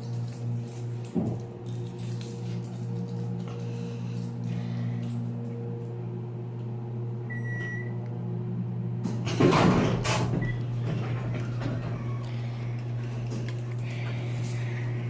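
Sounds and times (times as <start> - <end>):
elevator electrical hum: 0.0 - 15.0
elevator doors sliding open: 9.0 - 15.0.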